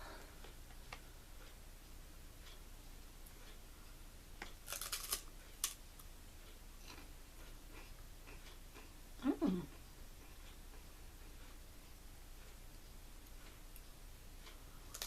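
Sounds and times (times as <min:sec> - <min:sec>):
potato chips crackling: 0:04.6 - 0:05.8.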